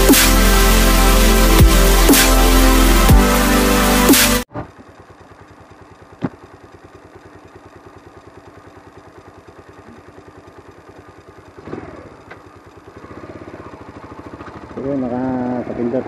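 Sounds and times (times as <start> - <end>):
motorcycle engine idling: 4.5 - 16.0.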